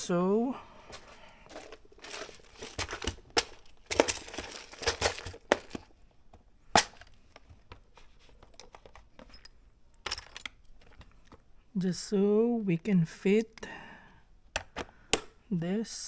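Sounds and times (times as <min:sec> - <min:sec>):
plastic snapping: 0:06.8 - 0:07.5, 0:14.5 - 0:15.4.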